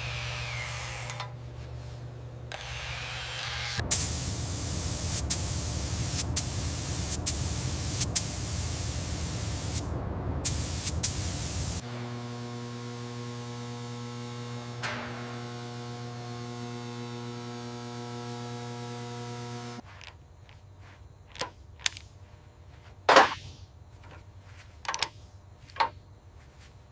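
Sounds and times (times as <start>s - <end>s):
heavy low rumble: 3.8s - 11.8s
spray-like hiss: 3.8s - 11.9s.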